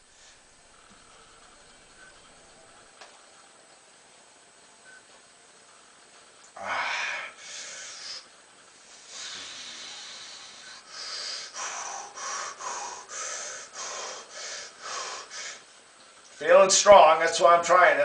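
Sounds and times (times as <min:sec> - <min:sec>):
man breathing hard: 0:06.6 - 0:08.3, 0:08.9 - 0:15.7.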